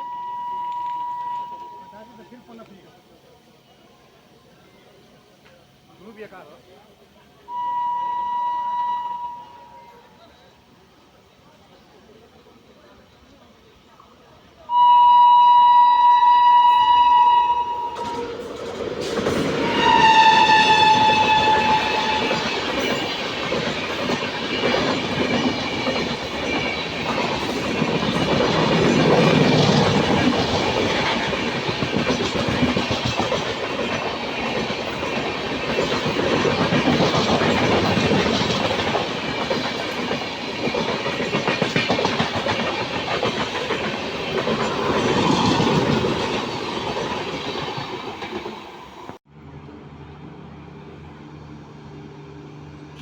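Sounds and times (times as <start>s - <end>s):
train horn blasts: 0.0s - 2.3s, 7.5s - 10.2s, 14.7s - 18.5s, 19.6s - 23.2s
train rumbling past: 0.0s - 53.0s.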